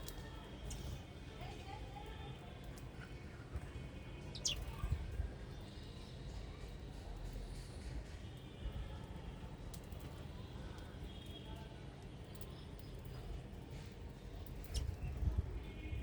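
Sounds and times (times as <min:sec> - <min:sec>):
small birds chirping: 0:04.3 - 0:05.0.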